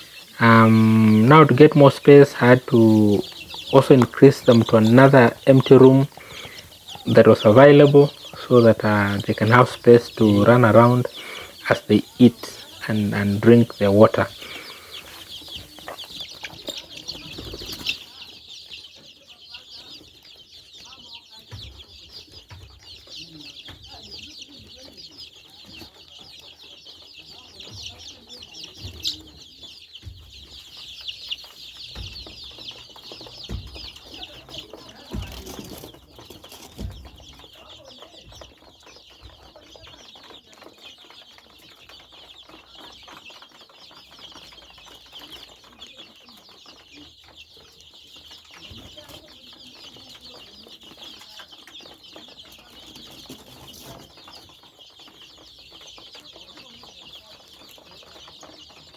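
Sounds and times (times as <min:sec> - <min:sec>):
chicks peeping: 0:00.0 - 0:58.9.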